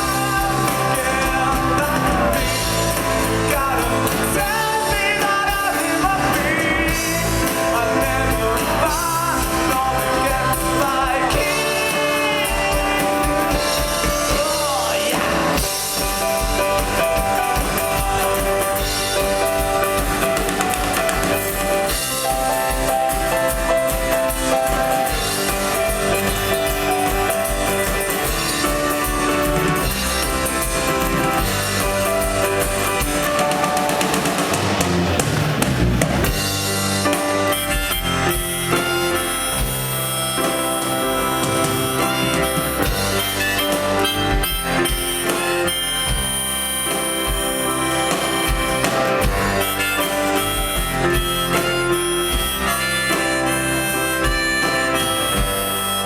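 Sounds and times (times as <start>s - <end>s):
person singing: 0.0s - 19.4s
rock band with guitar and drums: 0.0s - 56.0s.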